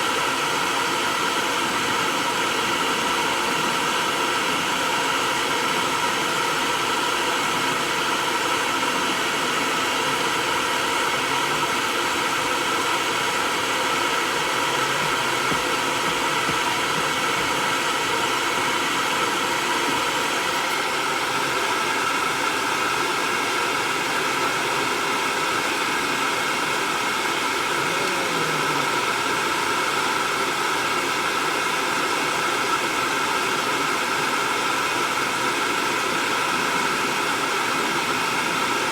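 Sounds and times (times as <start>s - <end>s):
hair dryer blowing: 0.0s - 38.9s.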